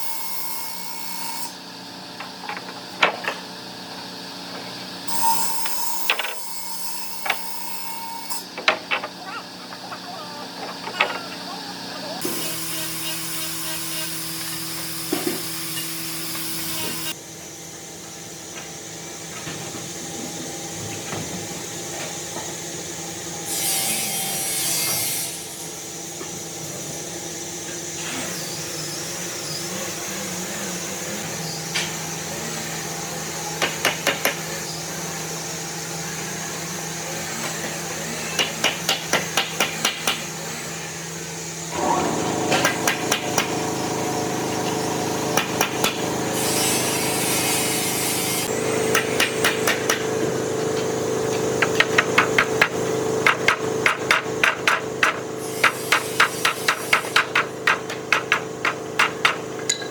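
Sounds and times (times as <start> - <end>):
hiss: 46.3 - 48.5, 55.4 - 57.4.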